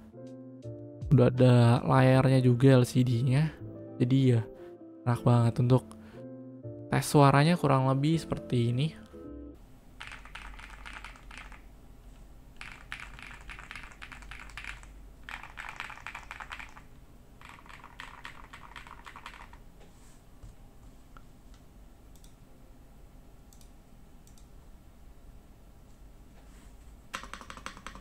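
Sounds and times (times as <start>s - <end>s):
mechanical keyboard typing: 10.0s - 11.7s, 12.6s - 19.6s, 27.1s - 28.0s.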